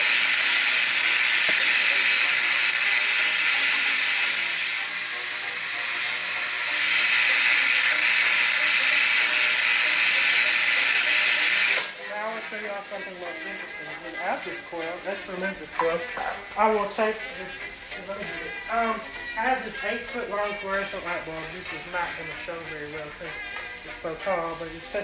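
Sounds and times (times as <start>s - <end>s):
electrical sparks hissing: 0.0s - 12.0s.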